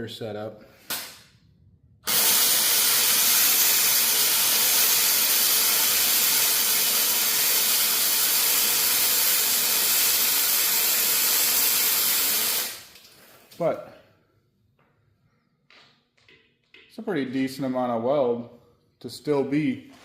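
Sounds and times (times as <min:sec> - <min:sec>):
welding arc crackling hiss: 0:00.8 - 0:01.2, 0:02.0 - 0:13.8.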